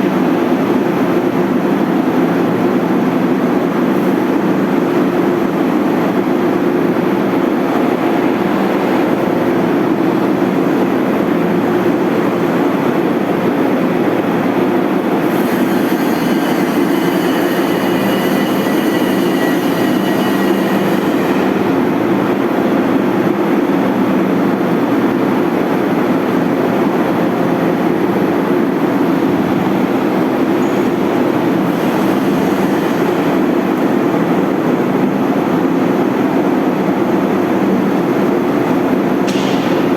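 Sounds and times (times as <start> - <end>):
machine humming: 6.1 - 25.7.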